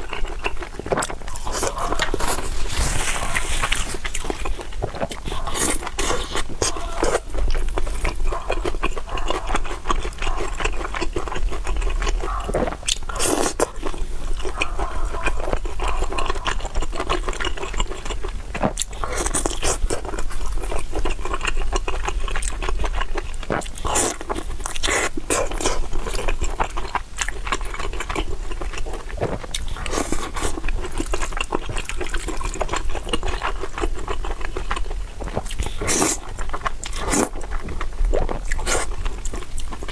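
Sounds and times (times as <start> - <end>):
person chewing and biting food: 0.0 - 39.9.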